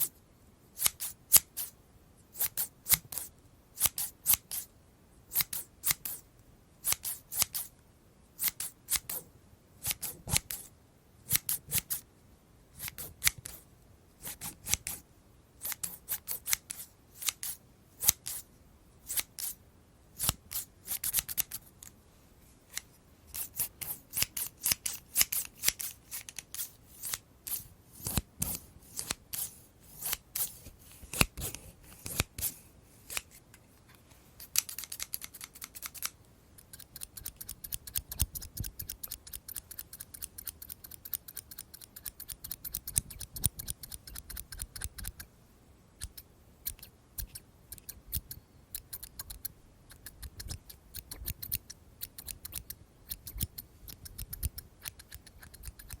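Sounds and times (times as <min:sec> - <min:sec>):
scissors snipping: 0:00.8 - 0:01.7, 0:06.8 - 0:07.7, 0:08.4 - 0:09.2, 0:09.8 - 0:10.7, 0:11.3 - 0:12.0, 0:12.8 - 0:13.6, 0:14.2 - 0:15.0, 0:15.6 - 0:18.4, 0:19.1 - 0:19.6, 0:20.2 - 0:21.9, 0:22.7 - 0:33.4, 0:34.4 - 0:45.3, 0:46.0 - 0:56.0.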